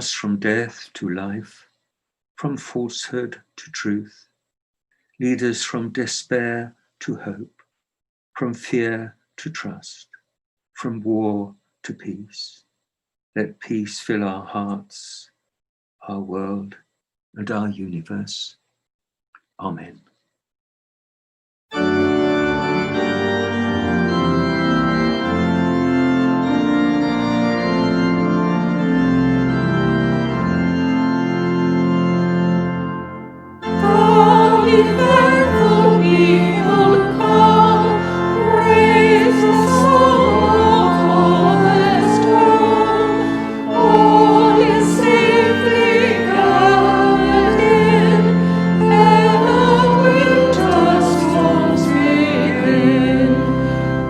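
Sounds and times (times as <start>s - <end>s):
organ playing chords: 21.7s - 54.0s
voices singing: 33.6s - 54.0s.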